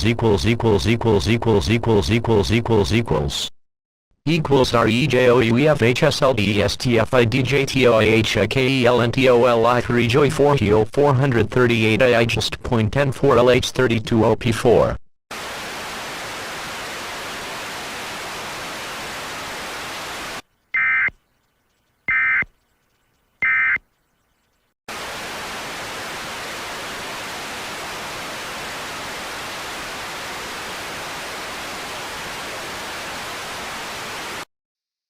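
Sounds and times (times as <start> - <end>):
static hiss: 15.4 - 20.4, 24.9 - 34.5
screechy data bursts: 22.1 - 22.5.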